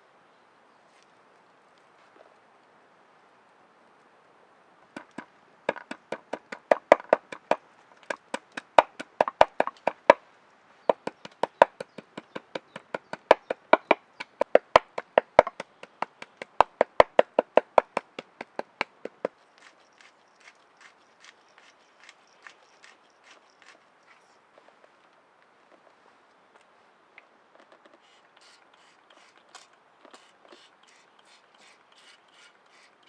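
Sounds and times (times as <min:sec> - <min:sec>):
blade chopping wood: 0:04.9 - 0:10.2, 0:10.9 - 0:19.3.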